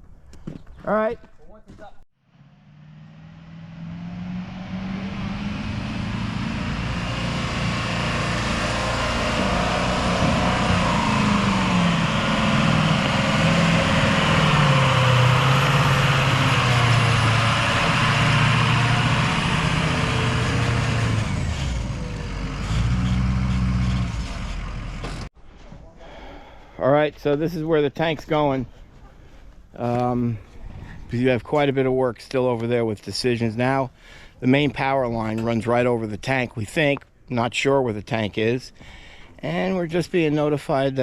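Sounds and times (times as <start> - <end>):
truck engine pulling under load: 2.3 - 25.3.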